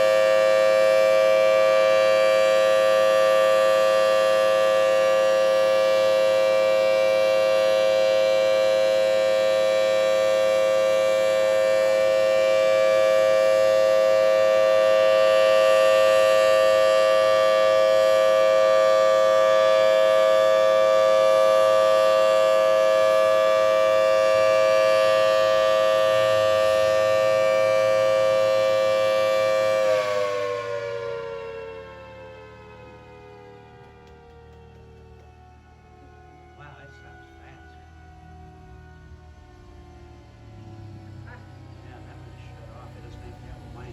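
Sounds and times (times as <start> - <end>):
siren steady held tone: 0.0 - 43.9.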